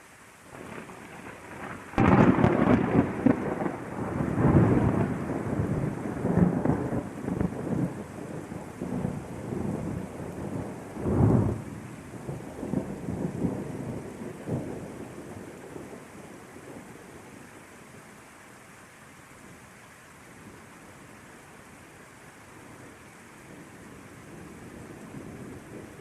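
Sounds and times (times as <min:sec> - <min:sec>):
steady rain: 0:00.0 - 0:26.0
thunder rolling: 0:00.6 - 0:11.6.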